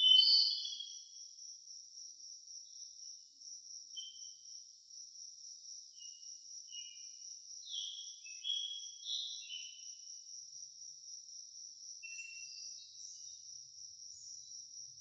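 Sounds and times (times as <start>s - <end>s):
bird chirps: 0.0s - 1.1s, 4.0s - 4.4s, 5.9s - 10.0s, 12.0s - 13.5s
crickets trilling: 0.0s - 15.0s.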